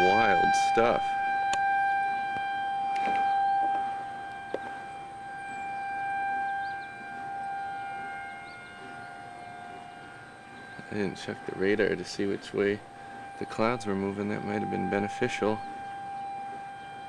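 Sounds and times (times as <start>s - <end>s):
tornado siren wailing: 0.0s - 17.0s.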